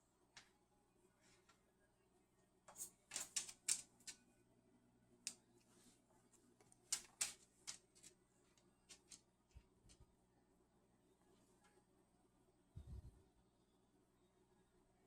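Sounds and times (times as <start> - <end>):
cockatoo clicking and tapping: 2.7 - 4.2, 6.9 - 8.1.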